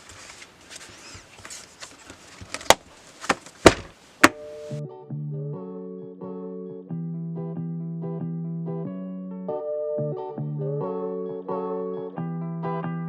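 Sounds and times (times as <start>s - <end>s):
faint rustle: 0.0s - 4.8s
sharp knocks: 2.7s - 4.4s
keyboard music: 4.3s - 13.0s.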